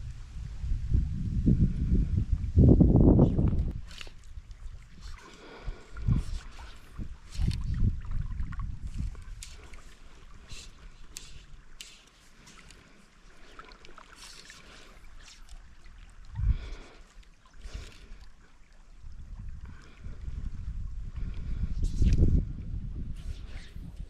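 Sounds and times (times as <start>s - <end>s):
wind buffet on microphone: 0.0s - 11.6s, 16.3s - 16.9s, 19.0s - 24.0s
river water running: 3.8s - 20.3s.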